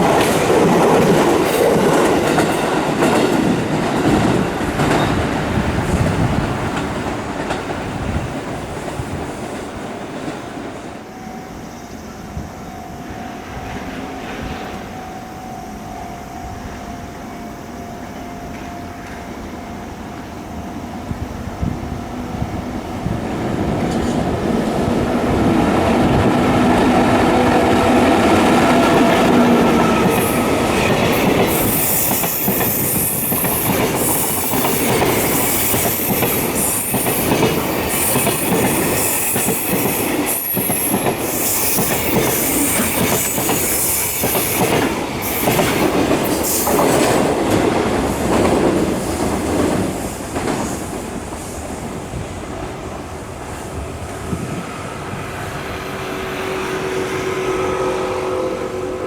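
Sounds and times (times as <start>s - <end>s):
train wheels clattering: 0.0s - 10.4s, 23.0s - 54.6s
wheel squeal and hiss: 31.5s - 44.6s.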